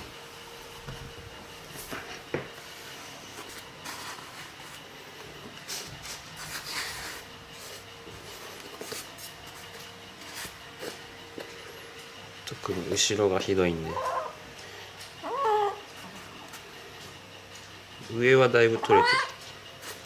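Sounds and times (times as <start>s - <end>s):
soft rubbing and rustling: 0.7s - 11.2s.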